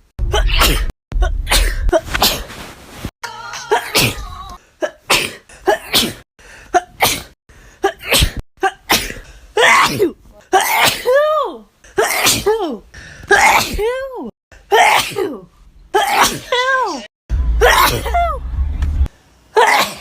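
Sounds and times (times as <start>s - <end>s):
woman sneezing: 3.6s - 11.4s, 12.0s - 14.0s, 14.7s - 18.3s, 19.6s - 20.0s.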